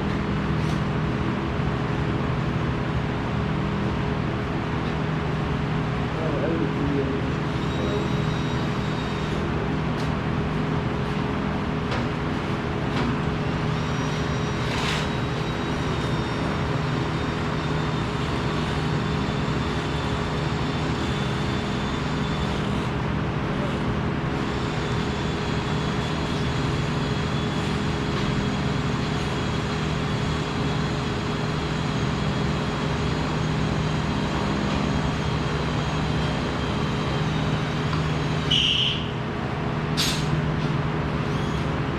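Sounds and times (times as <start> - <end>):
machinery hum: 0.0 - 41.9.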